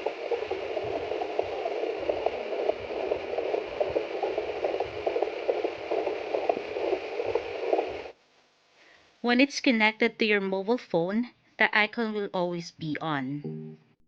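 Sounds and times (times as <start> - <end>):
doppler rushing hiss with crackles: 0.0 - 8.2.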